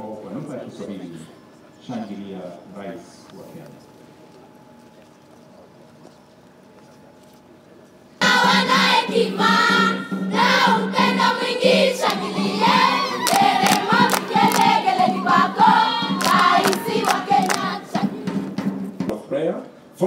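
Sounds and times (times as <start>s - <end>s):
choir singing: 8.2s - 18.6s
sharp beats: 12.0s - 18.2s.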